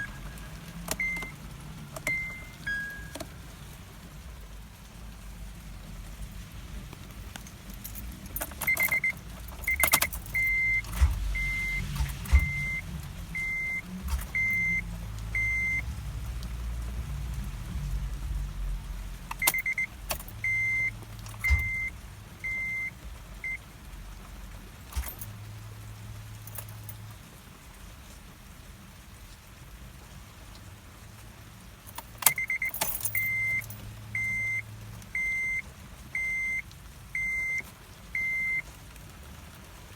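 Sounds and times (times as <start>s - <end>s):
car warning chime beeping: 0.0s - 3.6s, 8.4s - 15.9s, 19.3s - 23.6s, 24.9s - 25.3s, 32.0s - 38.7s
keys jangling: 7.3s - 12.8s, 19.3s - 22.7s, 24.9s - 25.3s, 31.9s - 34.3s
sharp clicks: 19.3s - 21.9s.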